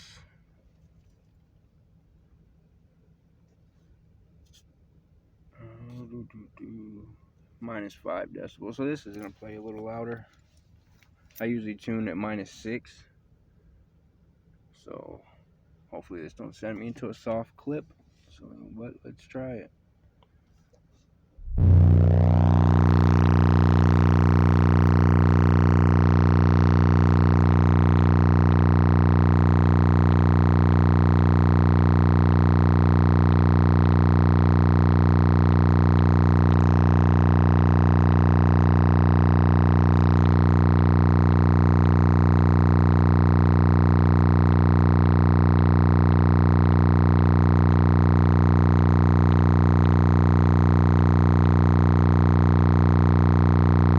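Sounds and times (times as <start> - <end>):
subwoofers playing low test tone: 21.4 - 53.9.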